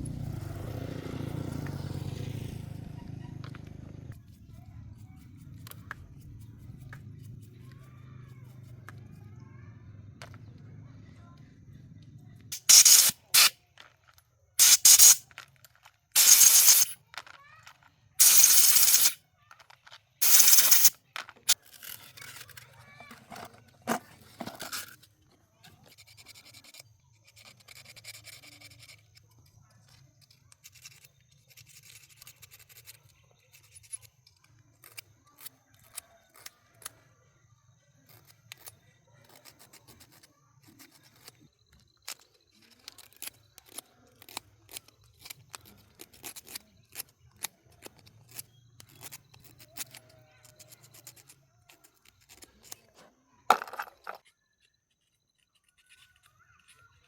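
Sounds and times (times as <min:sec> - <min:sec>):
faint clicks and handling sounds: 0:03.4 - 0:57.0
hissing blasts from nozzle: 0:12.5 - 0:13.5, 0:14.6 - 0:15.2, 0:16.2 - 0:17.0, 0:18.2 - 0:19.2, 0:20.2 - 0:20.9.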